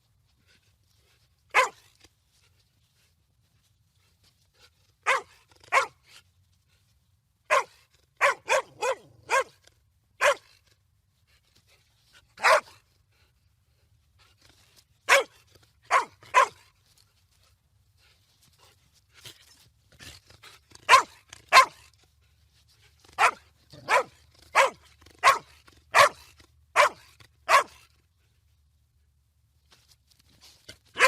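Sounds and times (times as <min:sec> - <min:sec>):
dog barking: 0:01.5 - 0:01.8, 0:05.0 - 0:06.0, 0:07.5 - 0:09.6, 0:10.2 - 0:10.5, 0:12.4 - 0:12.8, 0:15.1 - 0:15.3, 0:15.9 - 0:16.6, 0:20.9 - 0:21.8, 0:23.2 - 0:27.8.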